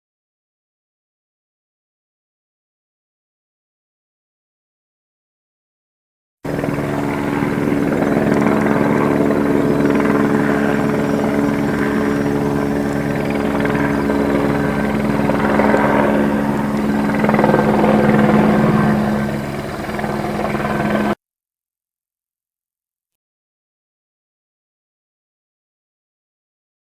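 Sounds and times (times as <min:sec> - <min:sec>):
helicopter engine drone: 0:06.5 - 0:21.2
helicopter rotor chop: 0:06.5 - 0:21.2.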